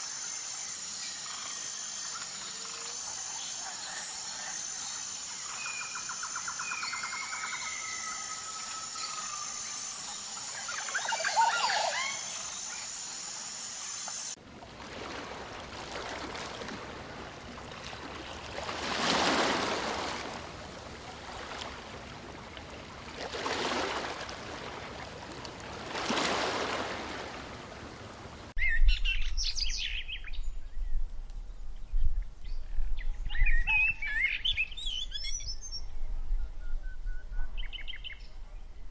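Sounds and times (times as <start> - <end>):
high insect drone: 0.0 - 14.4
birds calling: 15.4 - 28.5.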